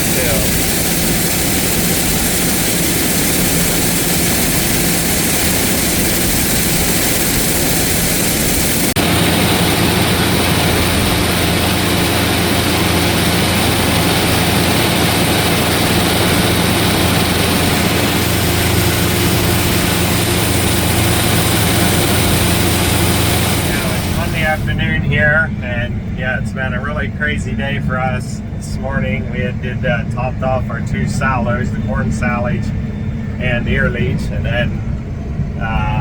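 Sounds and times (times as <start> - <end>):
farm machinery running: 0.0 - 36.0
low heavy engine drone: 0.0 - 36.0.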